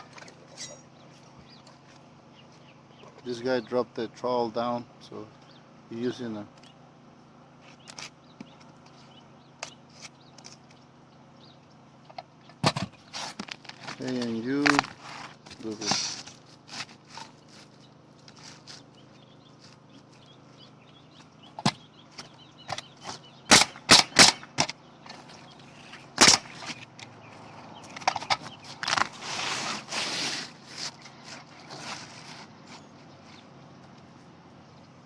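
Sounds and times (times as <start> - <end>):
nails driven into shingles: 22.7 - 24.8, 26.2 - 26.8
rough noise: 28.0 - 32.9.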